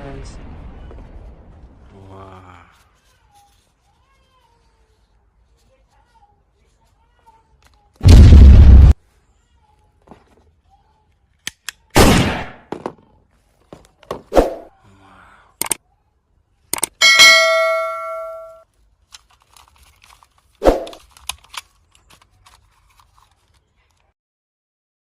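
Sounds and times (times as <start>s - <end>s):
metallic ding ringing: 17.0s - 18.6s.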